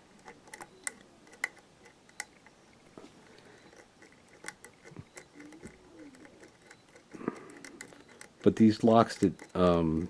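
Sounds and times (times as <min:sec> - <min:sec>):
lock pick clicking in a lock: 0:00.2 - 0:02.4.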